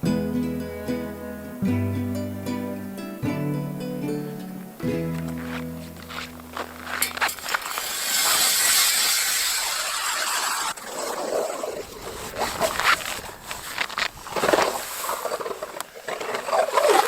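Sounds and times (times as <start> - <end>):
snow crunching and scraping: 4.5 - 17.0
hissing rush: 5.8 - 15.4.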